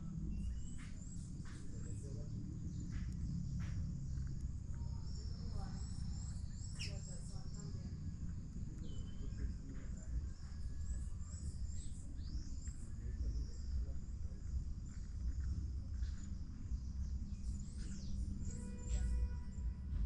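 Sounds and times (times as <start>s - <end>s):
steady low rumble: 0.0s - 20.0s
birds chirping and whistling: 0.2s - 3.8s, 5.0s - 8.0s, 8.7s - 19.6s.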